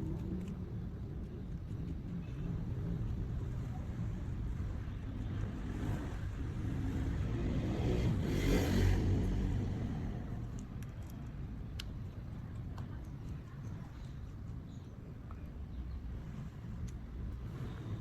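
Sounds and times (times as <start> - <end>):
low traffic rumble: 0.0 - 18.0
vehicle passing: 5.6 - 10.5.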